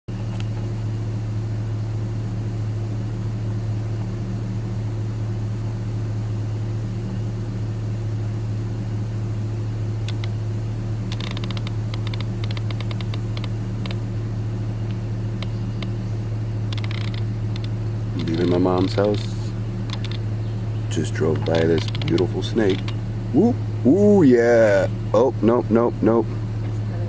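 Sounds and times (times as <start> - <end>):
car engine idling: 0.1 - 27.0
light clicks: 10.0 - 10.4, 16.7 - 18.9, 19.8 - 20.2, 21.3 - 23.0.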